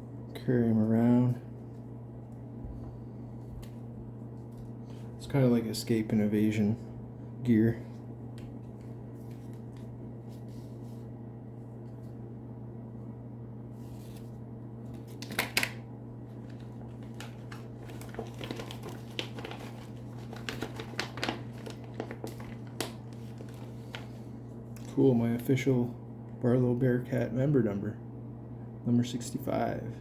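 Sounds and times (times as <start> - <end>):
steady low hum: 0.0 - 30.0
hands handling packaging: 14.9 - 24.9.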